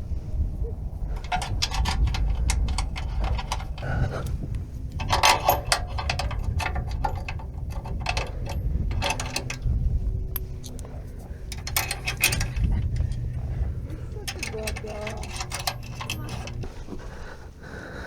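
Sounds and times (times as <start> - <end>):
steady low rumble: 0.0 - 18.0
ratchet wrench clicking: 1.2 - 3.9, 4.9 - 9.7, 11.5 - 13.3, 14.3 - 16.7.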